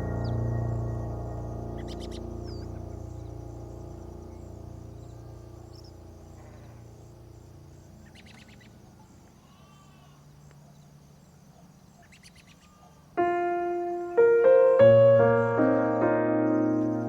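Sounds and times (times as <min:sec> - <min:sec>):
background music: 0:00.0 - 0:06.3, 0:13.2 - 0:17.0
piano music: 0:00.0 - 0:08.0, 0:13.2 - 0:17.0
small birds chirping: 0:00.0 - 0:17.0.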